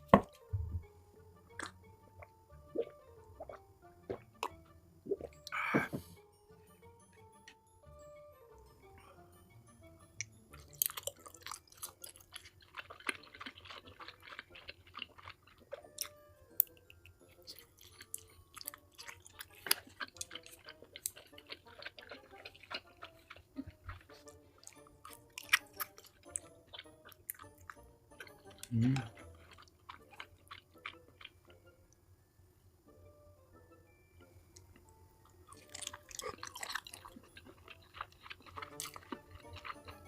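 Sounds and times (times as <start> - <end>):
chewing food with wet smacking: 1.6 - 2.9, 10.5 - 31.6, 34.5 - 40.0.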